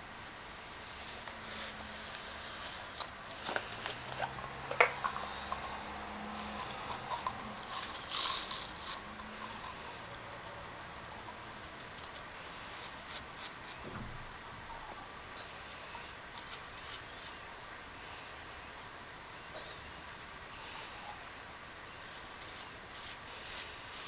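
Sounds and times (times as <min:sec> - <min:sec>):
scraping rub: 0:01.0 - 0:13.9, 0:22.0 - 0:24.0.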